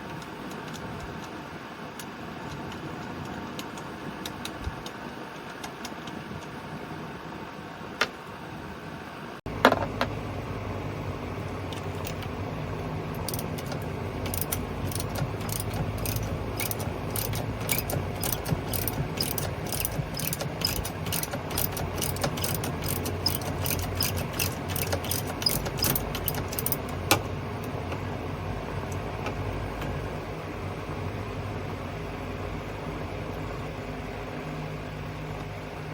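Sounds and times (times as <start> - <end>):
steady low hum: 6.3 - 35.9
ratchet wrench clicking: 13.2 - 27.2.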